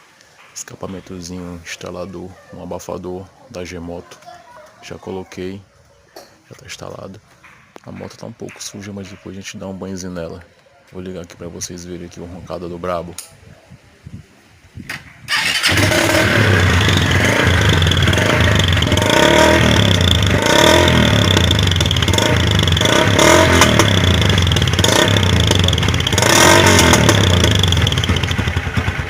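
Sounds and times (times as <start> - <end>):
motorcycle engine revving: 15.3 - 29.0
crackling exhaust: 15.7 - 29.0.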